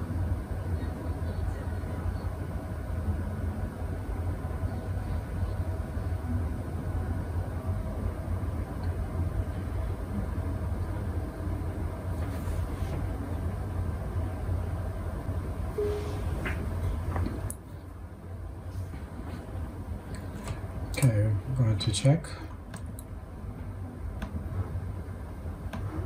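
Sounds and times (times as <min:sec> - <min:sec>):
low mechanical hum: 0:00.0 - 0:26.0
faint high steady tones: 0:15.7 - 0:16.6.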